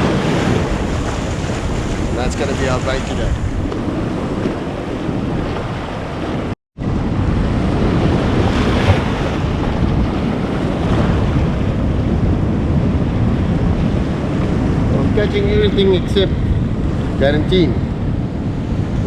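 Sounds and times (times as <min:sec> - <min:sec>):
sea surf washing against rocks: 0:00.0 - 0:06.6, 0:07.5 - 0:16.0
wind buffeting microphone: 0:00.0 - 0:19.0.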